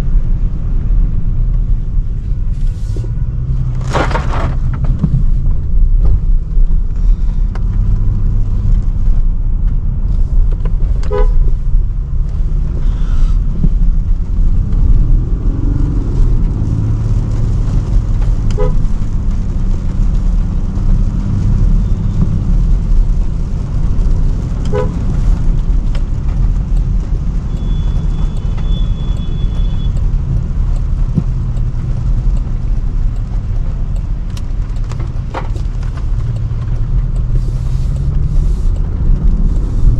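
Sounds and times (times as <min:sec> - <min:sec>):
car rumble inside cabin: 0:00.0 - 0:39.9
vehicle horns tooting: 0:11.1 - 0:11.4, 0:18.6 - 0:18.8, 0:24.7 - 0:25.0.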